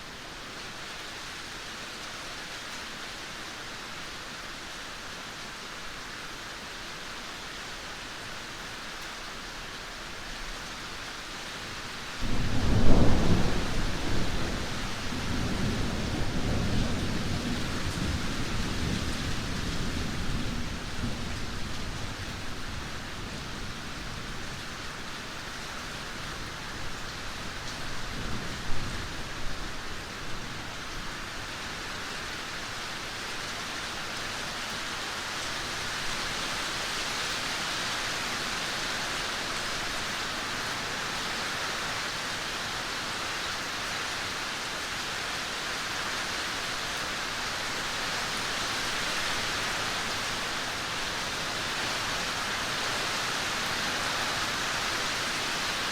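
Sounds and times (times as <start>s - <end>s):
heavy rain pouring: 0.0s - 55.9s
low thunder rumble: 12.2s - 21.6s.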